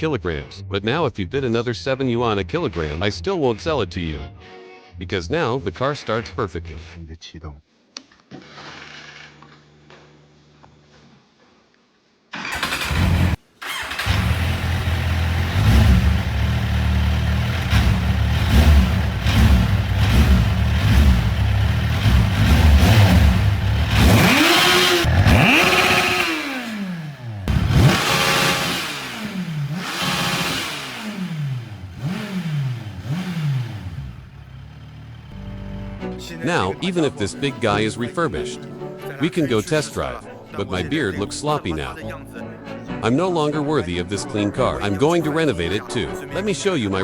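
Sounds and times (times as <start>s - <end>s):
motorcycle engine idling: 12.6s - 36.0s
engine revving: 12.6s - 36.1s.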